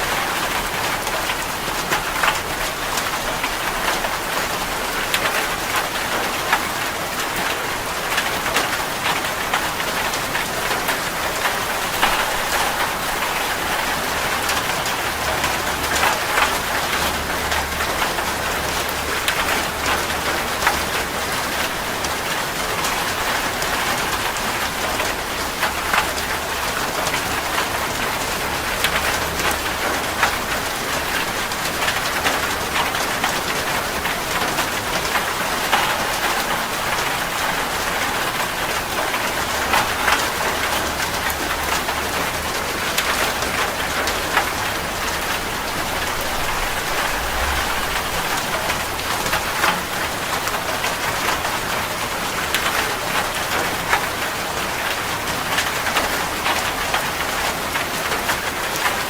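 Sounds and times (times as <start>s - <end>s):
heavy rain on a metal roof: 0.0s - 59.0s
faint low rumble: 45.3s - 49.7s.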